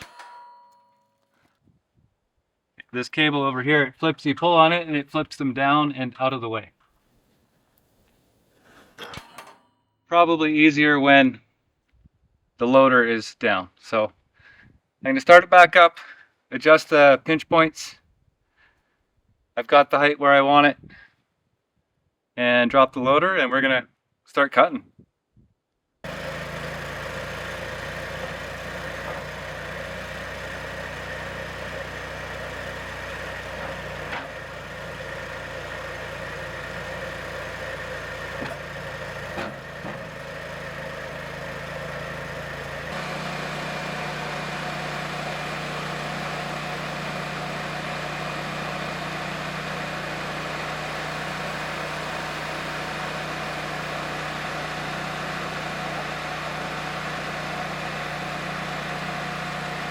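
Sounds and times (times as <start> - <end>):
engine knocks: 26.1 - 43.2
engine idling: 26.1 - 59.9.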